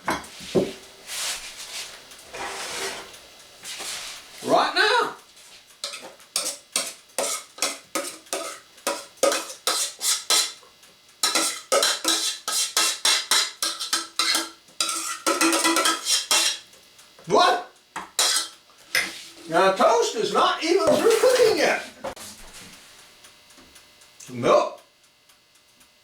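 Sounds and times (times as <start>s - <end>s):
metal spoon scraping a pot: 2.3s - 3.2s, 5.8s - 10.6s, 11.2s - 16.6s, 18.1s - 19.5s.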